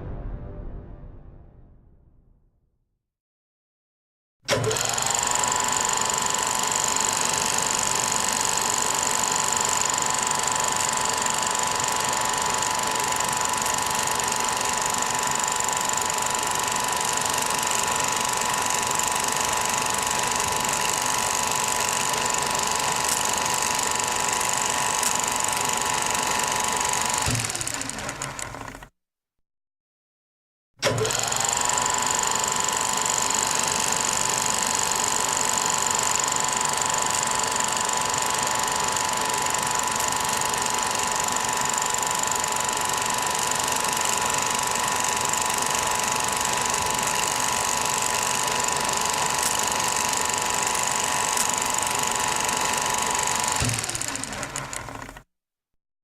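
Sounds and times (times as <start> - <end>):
film projector clatter: 4.5 - 28.9, 30.8 - 55.2
projector motor hum: 31.0 - 55.2.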